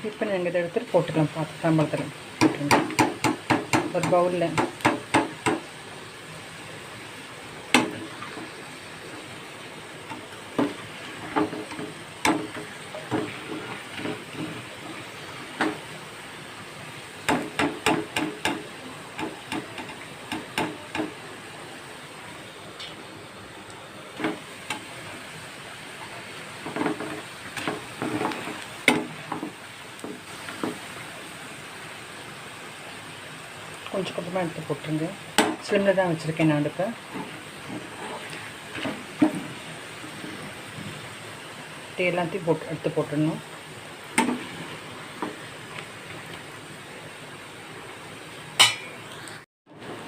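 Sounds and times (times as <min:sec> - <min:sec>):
food sizzling in hot oil: 0:00.0 - 0:50.0
utensil knocking on frying pan: 0:02.4 - 0:05.7, 0:07.7 - 0:08.1, 0:10.6 - 0:14.5, 0:17.2 - 0:21.2, 0:26.6 - 0:30.8, 0:35.4 - 0:35.6
metal spoon scraping a pan: 0:11.1 - 0:14.7.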